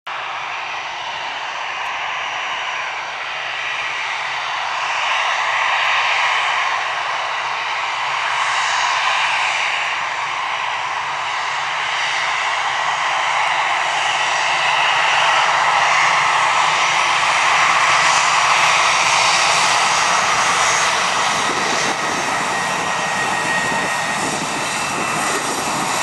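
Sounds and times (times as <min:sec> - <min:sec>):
jet engine rushing: 0:00.1 - 0:26.0.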